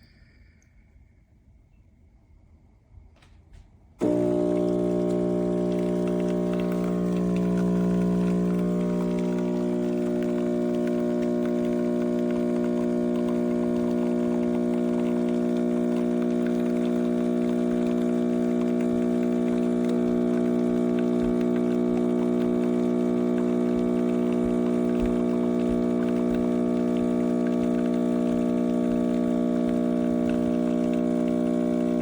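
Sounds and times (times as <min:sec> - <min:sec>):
espresso machine pump buzzing: 0:04.0 - 0:32.0.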